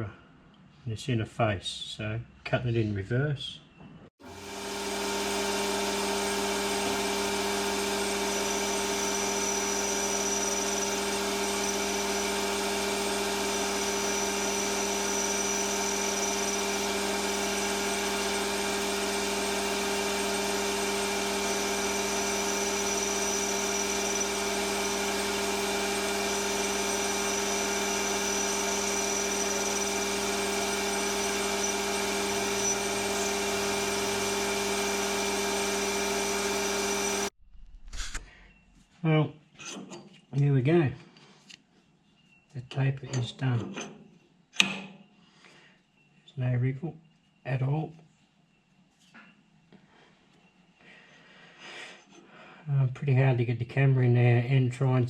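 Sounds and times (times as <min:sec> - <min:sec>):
lathe motor hum: 0:04.2 - 0:37.4.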